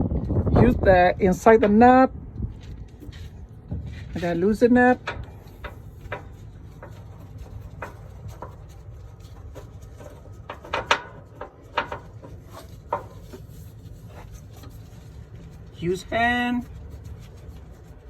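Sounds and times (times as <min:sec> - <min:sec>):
steady low hum: 0:00.0 - 0:18.0
hand tool clicking and knocking: 0:05.0 - 0:08.8, 0:09.4 - 0:13.4.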